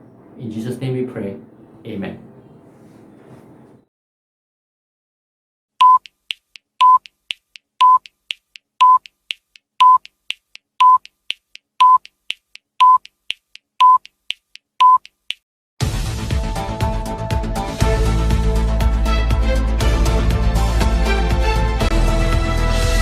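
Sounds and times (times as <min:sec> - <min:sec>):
short electronic beeps: 0:05.8 - 0:06.1, 0:06.8 - 0:07.1, 0:07.8 - 0:08.1, 0:08.8 - 0:09.1, 0:09.8 - 0:10.0, 0:10.8 - 0:11.0, 0:11.8 - 0:12.1, 0:12.8 - 0:13.1, 0:13.8 - 0:14.1, 0:14.8 - 0:15.1.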